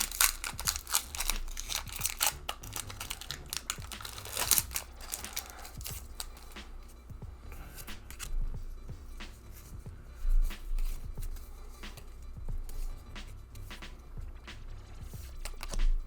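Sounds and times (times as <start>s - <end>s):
foil wrapper crinkling and tearing: 0.0s - 6.6s, 8.0s - 8.3s, 15.3s - 15.8s.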